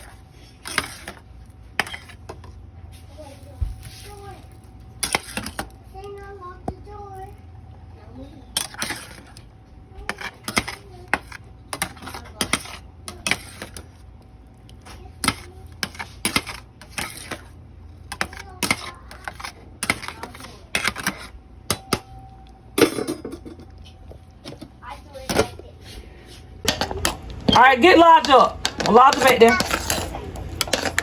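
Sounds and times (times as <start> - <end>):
utensils and cookware clinking: 0.0 - 2.6, 5.0 - 5.7, 8.5 - 9.4, 10.1 - 14.0, 14.7 - 31.0.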